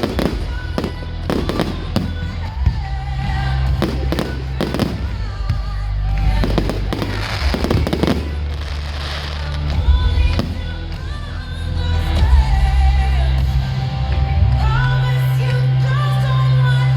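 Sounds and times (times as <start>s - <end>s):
fireworks bursting: 0.0s - 11.3s
loud music with heavy bass: 0.0s - 16.9s.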